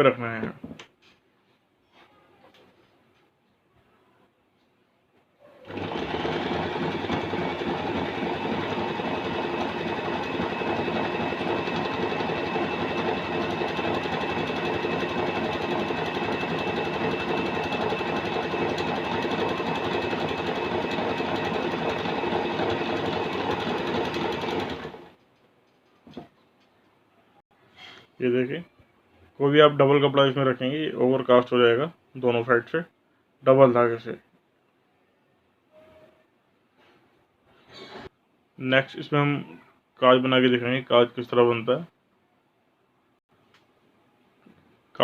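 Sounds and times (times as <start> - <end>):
sewing machine running: 5.6 - 25.2.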